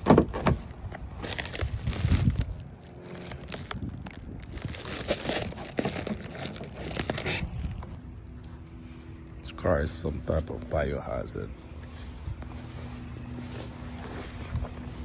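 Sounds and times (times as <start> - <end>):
plastic or paper crinkling: 1.1 - 7.8.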